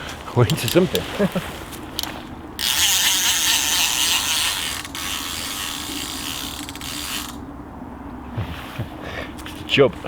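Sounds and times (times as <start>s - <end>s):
fishing reel ratcheting: 0.5s - 1.0s, 2.0s - 7.4s.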